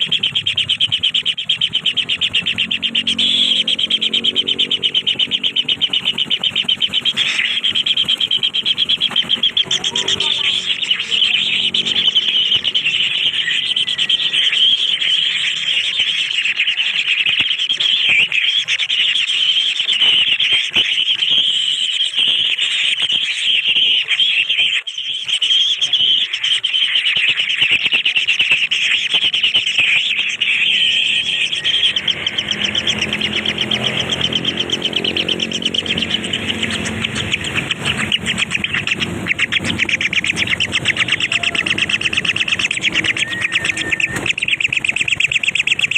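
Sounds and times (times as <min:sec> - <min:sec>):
lower pitched sound: 0:00.0 - 0:16.8, 0:29.3 - 0:45.9
nestling birds begging calls: 0:00.0 - 0:45.9.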